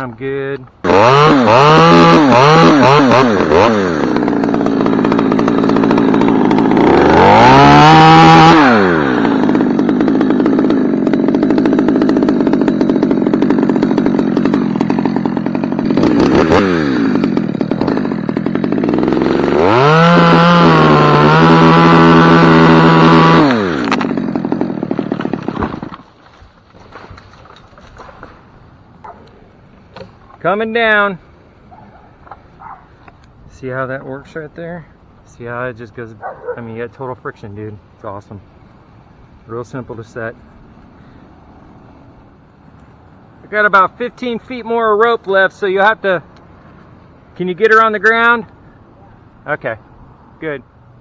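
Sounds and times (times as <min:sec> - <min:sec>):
chainsaw idling: 0:00.8 - 0:26.2
chainsaw cutting wood: 0:00.8 - 0:30.2.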